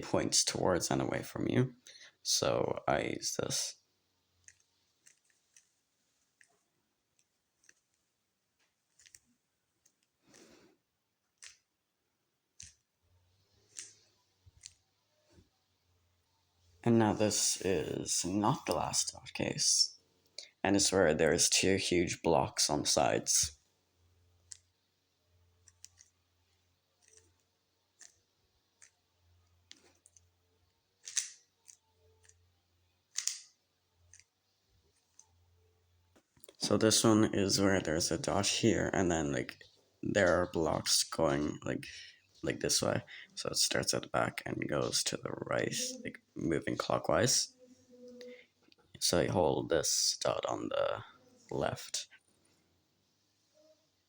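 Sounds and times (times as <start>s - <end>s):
puzzle cube plastic clicks: 8.6s - 9.2s, 31.0s - 34.4s
puzzle cube clicking: 8.9s - 10.4s, 27.0s - 30.3s, 31.0s - 34.4s.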